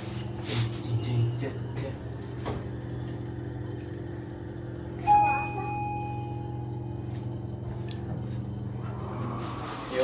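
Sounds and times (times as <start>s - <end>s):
steady low hum: 0.0s - 10.0s
bell-like tone ringing: 5.0s - 7.0s.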